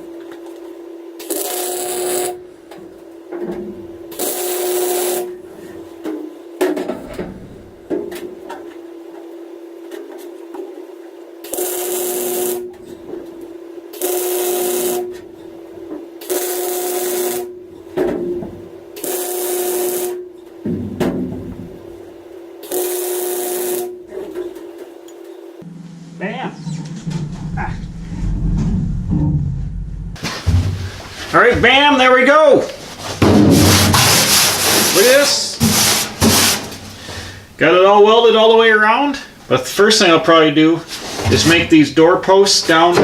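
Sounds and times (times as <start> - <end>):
steady hum: 0.0 - 43.0
welder crackling: 1.2 - 2.4, 4.1 - 5.3, 11.4 - 12.8, 13.9 - 15.2, 16.2 - 17.5, 19.0 - 20.2, 22.6 - 24.1, 33.7 - 36.8.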